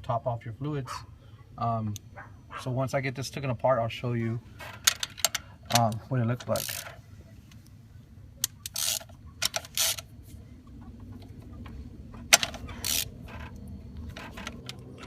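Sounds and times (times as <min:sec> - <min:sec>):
ratchet clicking: 0:06.4 - 0:06.9, 0:08.4 - 0:10.0, 0:12.4 - 0:13.5.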